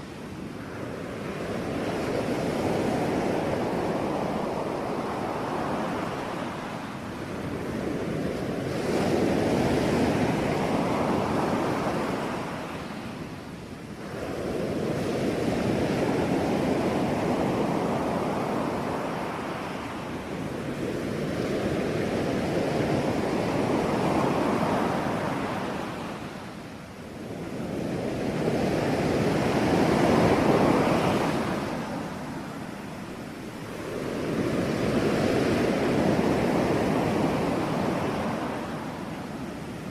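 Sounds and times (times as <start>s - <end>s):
ocean waves breaking on shore: 0.0s - 39.9s.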